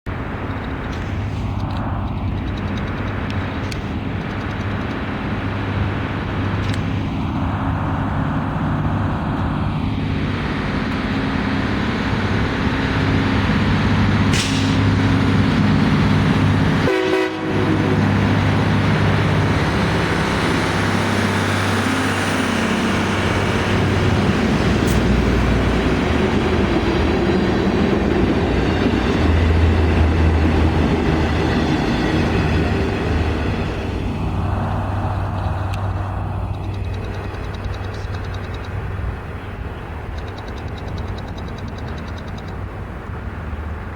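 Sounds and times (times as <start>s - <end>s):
diesel engines running: 0.1s - 43.9s
machine horns sounding: 16.8s - 18.0s.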